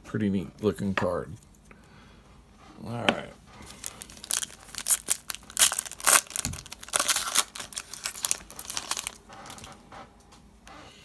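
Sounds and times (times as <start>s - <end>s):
wrapper crinkling and tearing: 3.6s - 9.7s.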